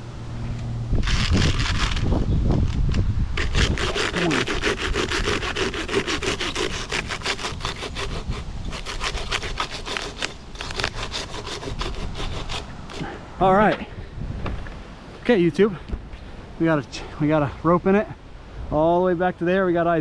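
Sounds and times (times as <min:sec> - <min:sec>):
handsaw cutting through tree limb: 0:00.9 - 0:13.2.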